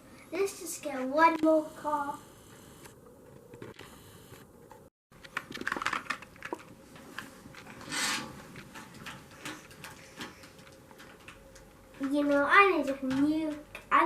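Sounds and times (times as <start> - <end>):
plastic toy pieces clattering: 5.2 - 6.7.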